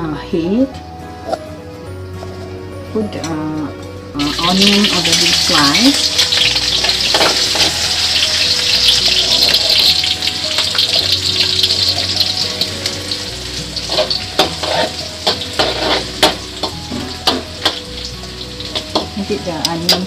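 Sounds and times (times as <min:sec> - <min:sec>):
onions sizzling in oil: 0:04.2 - 0:20.0.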